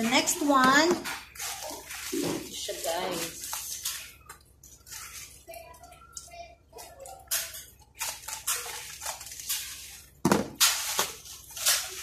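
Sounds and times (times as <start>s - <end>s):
packaging rustling and crinkling: 1.0s - 5.2s.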